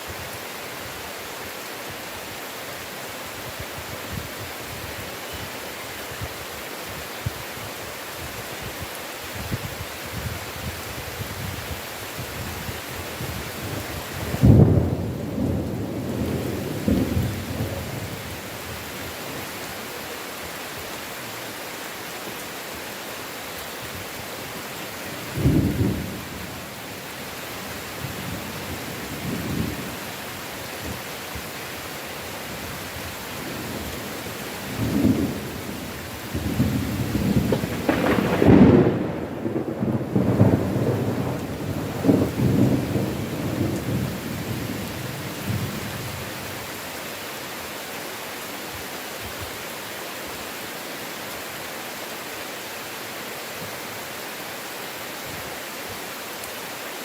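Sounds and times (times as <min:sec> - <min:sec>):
heavy rain hissing: 0:00.0 - 0:57.0
thunder rumbling: 0:13.2 - 0:18.7, 0:25.2 - 0:26.6, 0:33.5 - 0:46.1.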